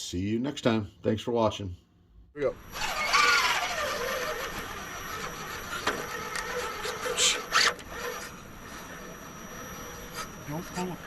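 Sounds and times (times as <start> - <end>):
electric motor whining: 2.4 - 11.0.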